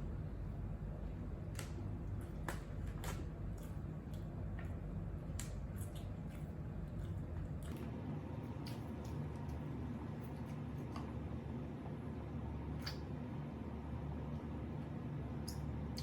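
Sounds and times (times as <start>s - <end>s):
steady low hum: 0.0s - 16.0s
wet mouth clicks eating: 12.8s - 13.1s.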